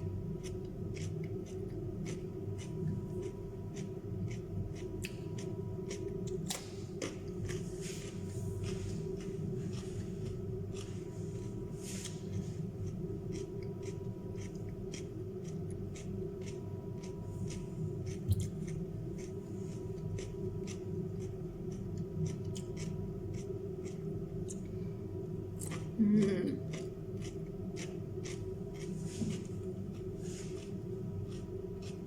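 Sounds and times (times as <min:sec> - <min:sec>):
steady low hum: 0:00.0 - 0:32.0
crisp chewing crunches: 0:26.6 - 0:32.0.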